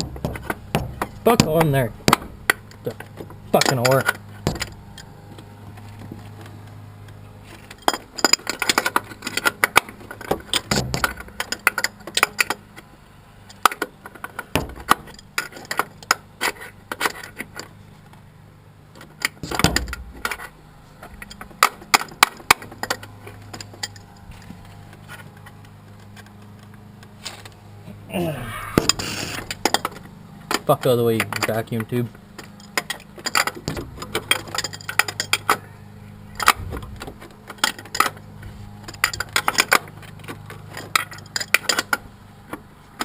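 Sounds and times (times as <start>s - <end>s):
metal tools clinking and rattling: 0.0s - 5.2s, 7.5s - 12.6s, 13.5s - 17.8s, 19.1s - 26.3s, 28.8s - 35.6s, 36.3s - 38.2s, 38.8s - 42.0s.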